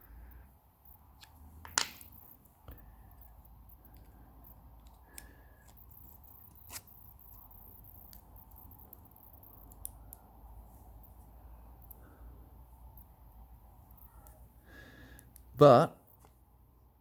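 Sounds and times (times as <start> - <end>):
low steady hum: 0.0 - 17.0
padlock parts clicking: 0.8 - 10.3.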